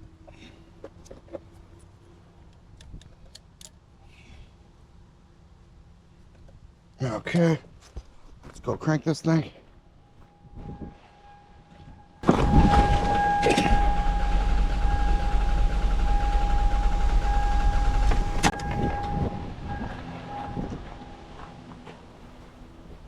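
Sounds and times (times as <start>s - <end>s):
starter motor cranking engine: 12.2s - 19.2s.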